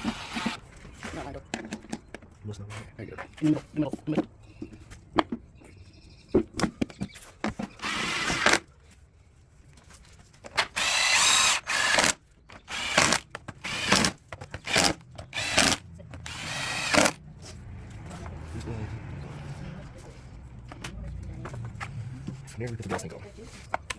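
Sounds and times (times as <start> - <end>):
cordless drill bursts: 0.0 - 0.6, 7.8 - 8.6, 10.7 - 17.2.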